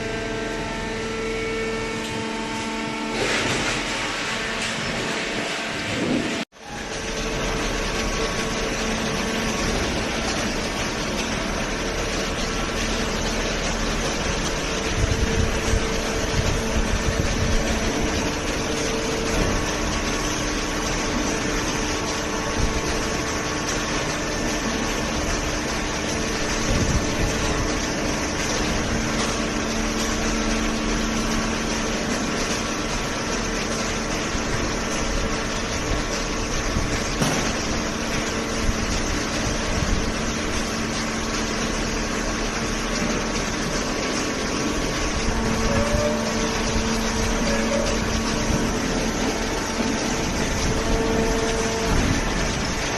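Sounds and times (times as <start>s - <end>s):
baler motor and pump humming: 0.0s - 52.9s.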